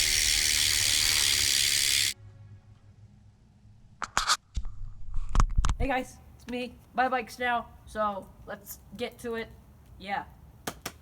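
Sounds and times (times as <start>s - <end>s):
bicycle hub freewheeling buzz: 0.0s - 2.2s.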